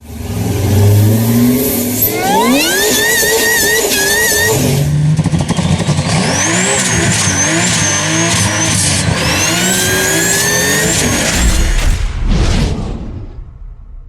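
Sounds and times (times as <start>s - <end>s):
car engine revving hard: 0.0s - 11.9s
tyre squeal: 2.0s - 11.5s.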